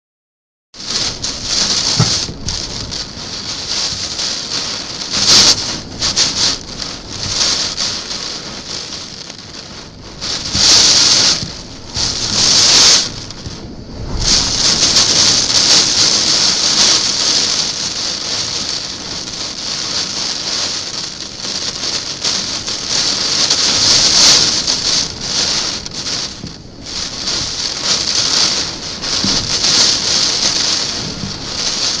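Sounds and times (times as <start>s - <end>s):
rain and wind gusts: 0.8s - 32.0s.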